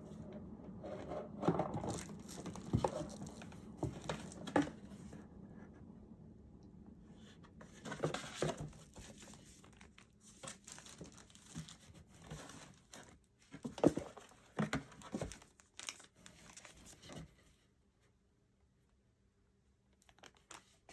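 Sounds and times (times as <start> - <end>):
packaging crinkling and rustling: 1.4 - 4.9, 7.8 - 17.2, 20.0 - 20.9.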